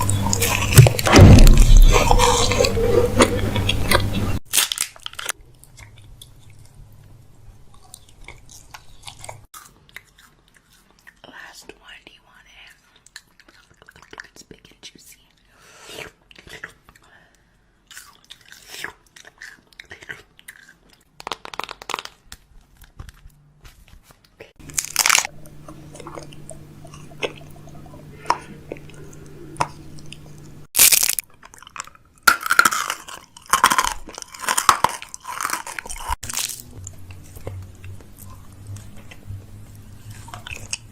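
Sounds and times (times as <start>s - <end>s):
steady low hum: 0.0s - 4.4s, 24.6s - 30.7s, 34.0s - 40.9s
person chewing food: 0.0s - 11.2s, 12.9s - 14.4s, 17.8s - 23.5s, 24.6s - 40.9s.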